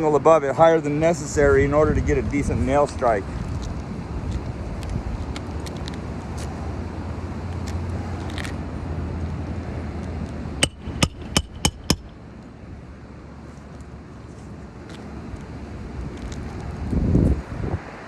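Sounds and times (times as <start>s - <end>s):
wind noise on microphone: 1.2s - 6.0s, 15.8s - 18.0s
hammer blows on metal: 10.6s - 12.2s.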